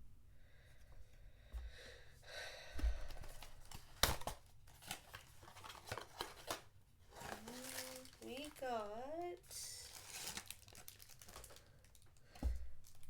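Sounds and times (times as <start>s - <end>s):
paper and wrapper tearing: 3.3s - 12.1s.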